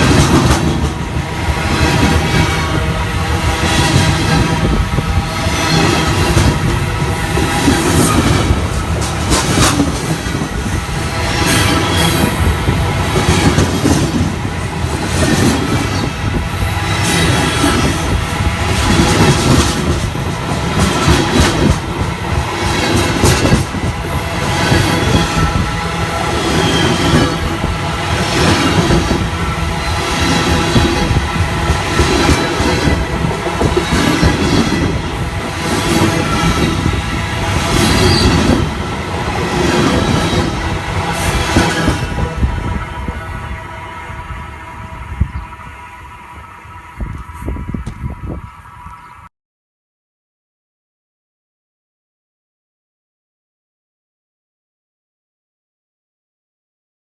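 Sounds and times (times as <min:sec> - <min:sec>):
train wheels rumbling on rail: 0:00.0 - 0:49.0.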